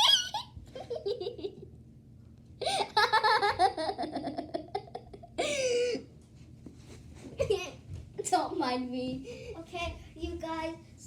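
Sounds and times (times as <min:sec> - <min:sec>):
child laughing and giggling: 0:00.0 - 0:01.6, 0:02.6 - 0:06.0.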